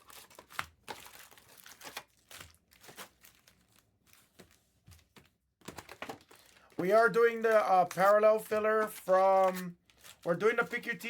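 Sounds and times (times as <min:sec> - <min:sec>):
plastic wrapping crinkling and tearing: 0:00.0 - 0:04.6, 0:05.6 - 0:11.0.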